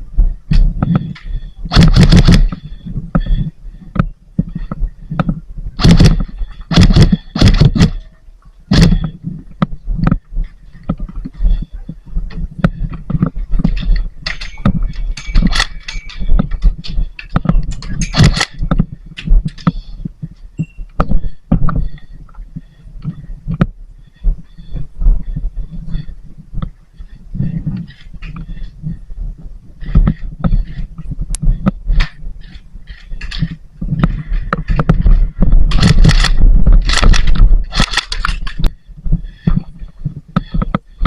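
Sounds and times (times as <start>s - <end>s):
airsoft guns firing: 1.7s - 2.5s, 5.8s - 8.0s.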